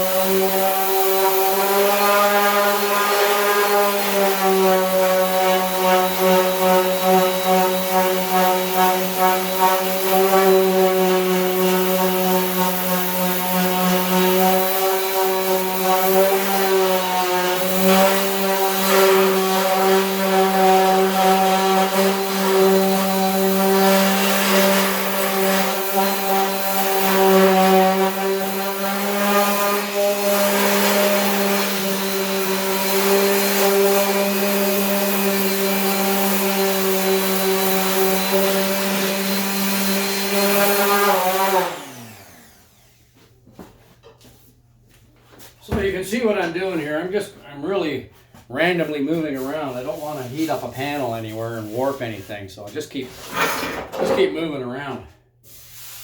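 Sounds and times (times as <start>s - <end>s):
power sander rasping: 0.0s - 43.2s, 48.6s - 52.4s.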